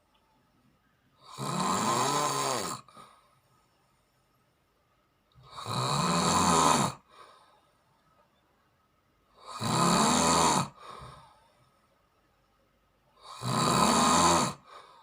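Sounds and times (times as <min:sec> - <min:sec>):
loud snores: 0:01.2 - 0:03.0, 0:05.4 - 0:07.1, 0:09.4 - 0:11.2, 0:13.2 - 0:14.9
faint breath: 0:02.9 - 0:04.4, 0:07.0 - 0:08.0, 0:10.7 - 0:12.0, 0:14.6 - 0:15.0.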